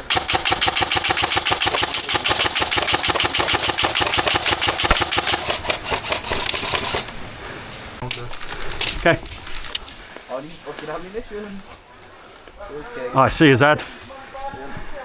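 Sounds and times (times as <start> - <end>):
airsoft gun firing full-auto: 0.0 - 7.1.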